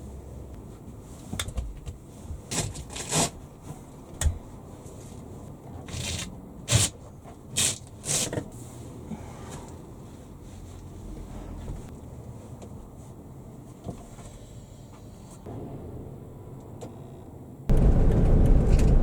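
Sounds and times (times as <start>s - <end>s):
low steady rumble: 14.6s - 19.0s.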